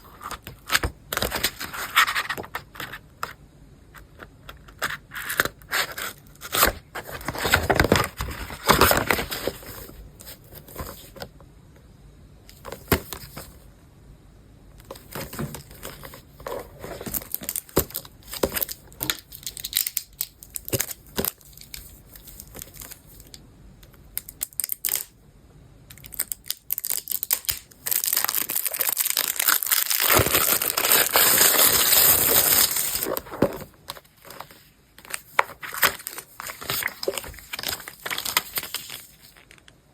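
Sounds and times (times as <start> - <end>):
plastic wrap crinkling: 26.0 - 39.7
plastic wrap tearing: 26.1 - 33.2, 35.6 - 39.6.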